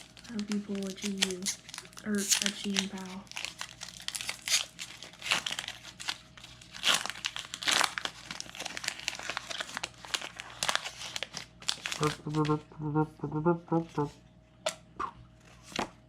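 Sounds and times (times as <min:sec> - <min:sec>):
foil wrapper crinkling: 0:00.0 - 0:12.6.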